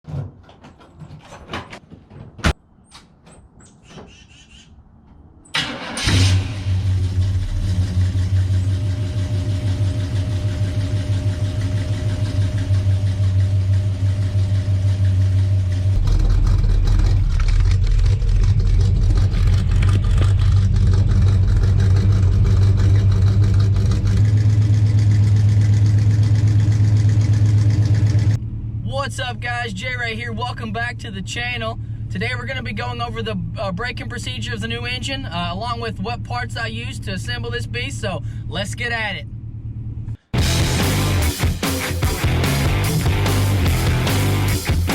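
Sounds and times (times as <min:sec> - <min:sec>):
clicks and knocks: 0:00.0 - 0:04.1
truck engine starting and idling: 0:05.4 - 0:44.9.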